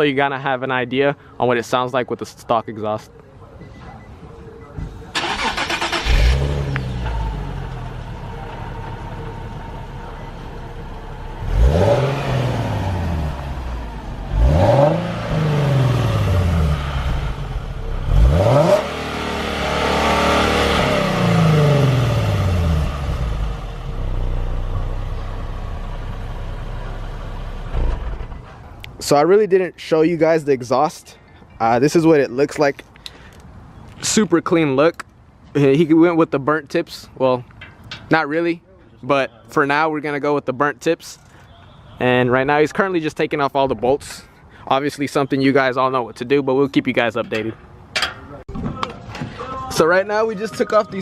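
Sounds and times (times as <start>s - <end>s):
car engine starting and revving: 5.1s - 25.2s.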